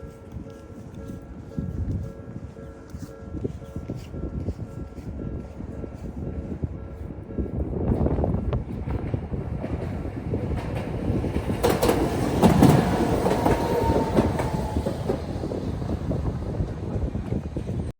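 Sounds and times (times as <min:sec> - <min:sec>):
streetcar rumbling: 0:00.4 - 0:17.9
wheels clicking over rail joints: 0:08.8 - 0:15.6.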